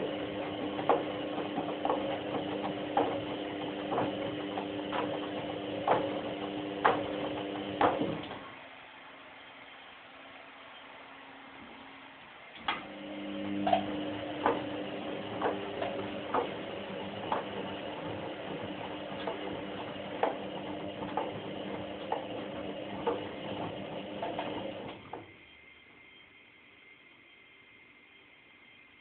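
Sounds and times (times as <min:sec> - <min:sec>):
washing machine drum humming: 0:00.0 - 0:08.5, 0:12.6 - 0:25.5.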